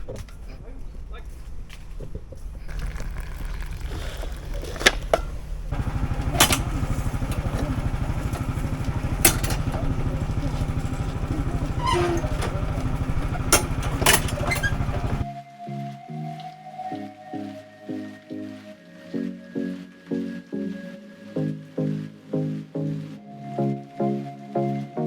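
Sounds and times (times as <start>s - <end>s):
tractor engine running: 4.4s - 15.3s
sharp knocks and clatters: 5.0s - 15.3s.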